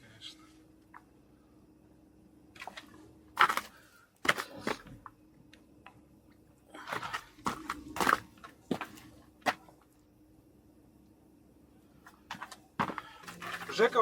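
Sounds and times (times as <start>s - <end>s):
faint low hum: 0.0s - 14.0s
knocks and scrapes: 12.1s - 14.0s.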